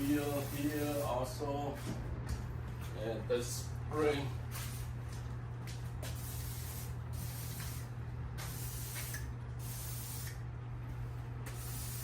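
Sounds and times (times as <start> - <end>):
aerosol spray hissing: 11.5 - 12.0.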